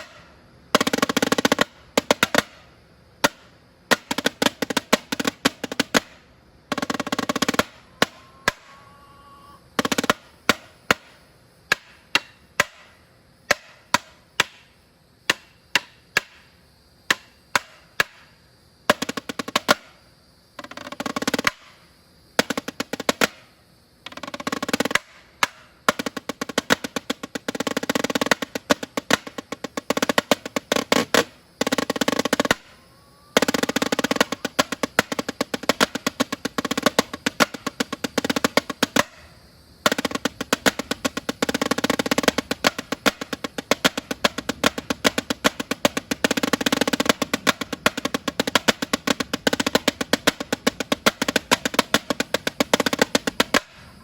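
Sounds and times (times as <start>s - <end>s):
snare drum rolls: 3.2s - 8.8s, 24.1s - 32.6s, 33.4s - 39.2s, 39.8s - 53.8s.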